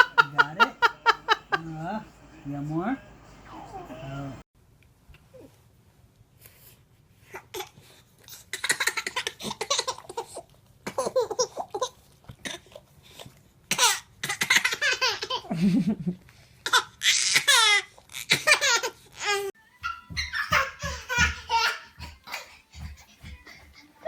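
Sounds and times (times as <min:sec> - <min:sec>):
baby giggling: 0:18.4 - 0:22.9.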